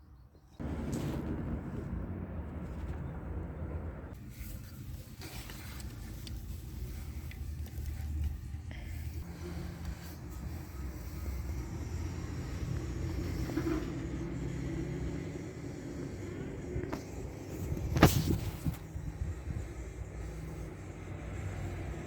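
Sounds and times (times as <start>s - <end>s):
car engine idling: 0.6s - 5.0s.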